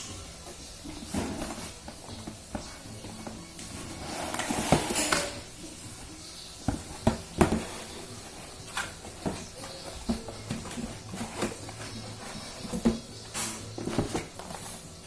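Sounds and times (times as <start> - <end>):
clicks and knocks of handled items: 6.6 - 14.9.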